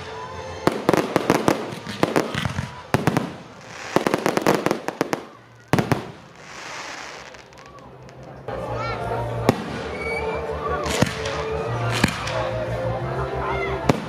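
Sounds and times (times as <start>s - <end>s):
fireworks cracking: 0.0s - 8.5s, 10.8s - 12.6s
fireworks crackling hiss: 0.0s - 8.5s, 9.4s - 12.8s.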